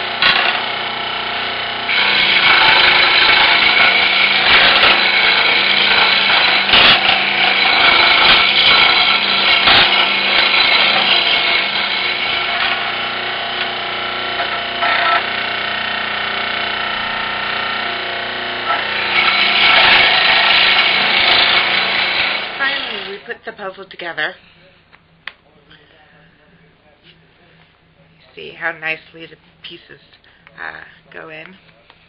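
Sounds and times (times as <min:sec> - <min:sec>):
power saw cutting plywood: 0:00.0 - 0:23.3.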